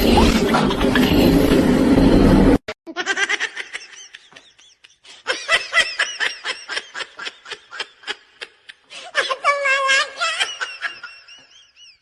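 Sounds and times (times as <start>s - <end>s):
loud noise: 0.0s - 2.6s
person giggling: 2.9s - 9.4s.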